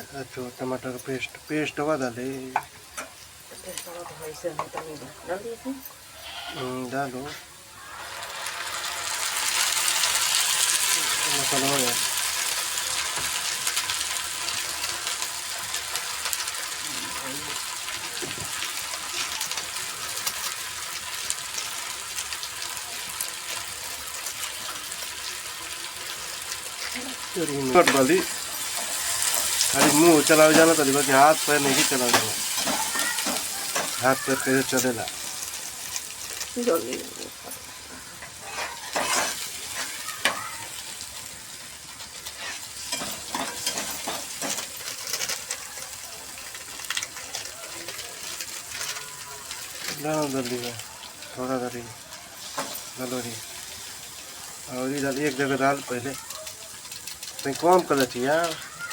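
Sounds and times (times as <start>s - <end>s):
masala sizzling in hot oil: 0.0s - 58.9s
spoon scraping a pan: 27.2s - 34.0s, 37.3s - 40.4s, 42.2s - 45.4s.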